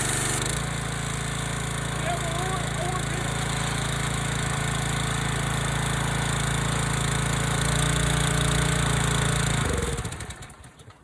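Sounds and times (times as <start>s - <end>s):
pressure washer engine running: 0.0s - 10.8s.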